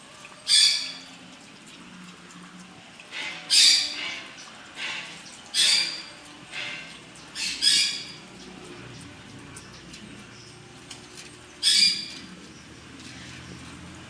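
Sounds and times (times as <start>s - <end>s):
parrot squawking: 3.5s - 4.0s, 7.4s - 8.2s, 11.6s - 12.2s.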